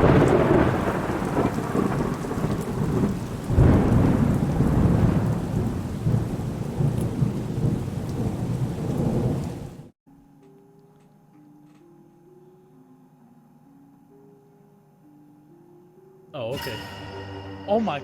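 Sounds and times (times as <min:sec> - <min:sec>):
heavy rain: 0:00.0 - 0:09.9
rolling thunder: 0:00.0 - 0:09.9
thunder clap: 0:00.0 - 0:09.9.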